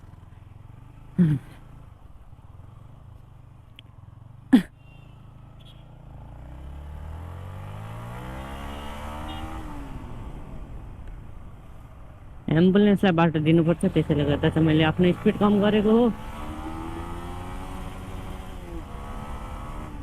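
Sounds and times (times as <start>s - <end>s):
motorcycle engine accelerating: 6.0s - 10.8s, 13.7s - 20.0s.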